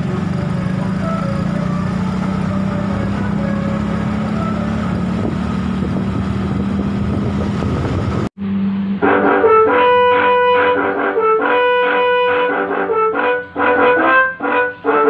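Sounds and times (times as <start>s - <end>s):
loud pitched notes: 0.0s - 7.1s, 8.4s - 15.0s
bus engine humming: 0.0s - 15.0s
wind buffeting microphone: 2.8s - 8.3s.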